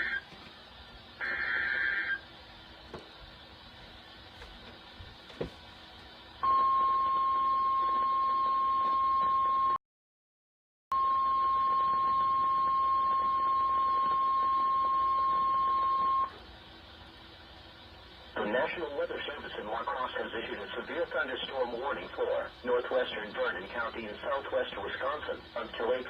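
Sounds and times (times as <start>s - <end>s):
faint radio hiss: 0.0s - 6.4s, 17.8s - 26.0s
loud high alarm tone: 1.2s - 2.3s, 6.4s - 9.8s, 10.9s - 16.4s.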